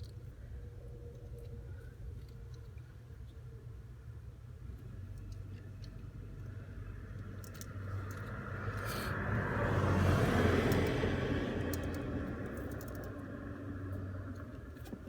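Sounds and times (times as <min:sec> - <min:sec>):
vehicle passing: 0:07.7 - 0:14.5.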